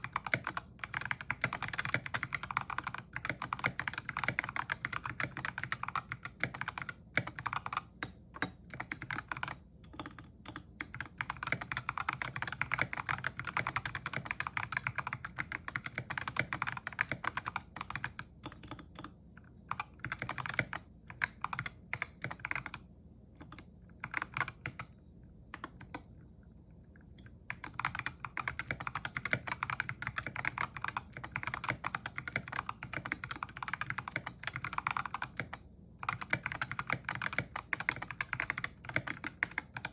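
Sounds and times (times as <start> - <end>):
mechanical keyboard typing: 0.0 - 24.9, 25.5 - 26.1, 27.2 - 39.9.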